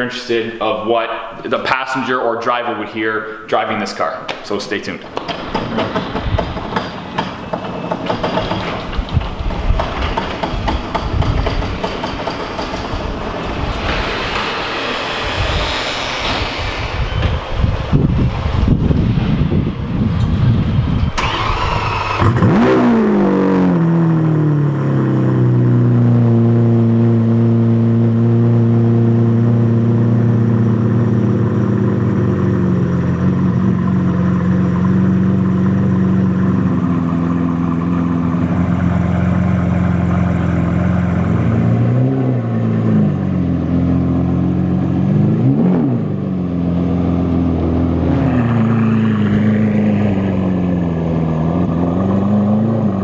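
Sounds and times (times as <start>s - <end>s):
engine throttle blips: 7.4s - 53.0s
sports car engine idling: 20.1s - 45.3s, 46.2s - 53.0s.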